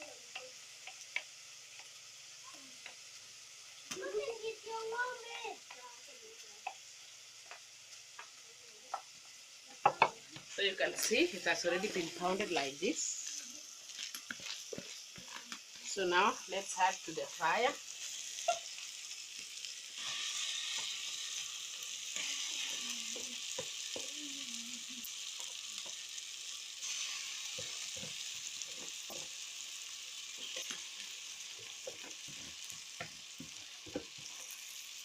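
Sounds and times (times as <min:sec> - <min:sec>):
food sizzling in a pan: 0:00.0 - 0:35.0
stirring knocks and scrapes: 0:13.9 - 0:16.0, 0:31.5 - 0:34.6.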